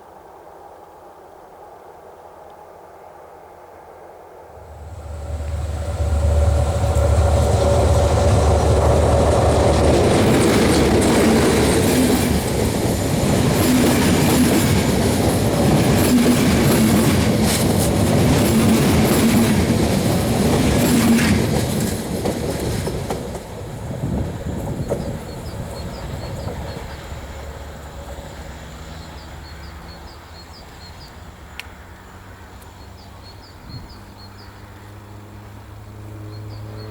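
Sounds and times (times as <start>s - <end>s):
train wheels clattering over rails: 4.6s - 31.2s.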